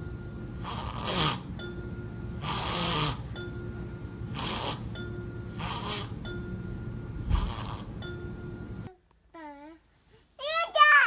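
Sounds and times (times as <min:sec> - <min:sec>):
adult snoring loudly: 0:00.6 - 0:01.5, 0:02.4 - 0:03.4, 0:04.2 - 0:06.2, 0:07.2 - 0:08.0.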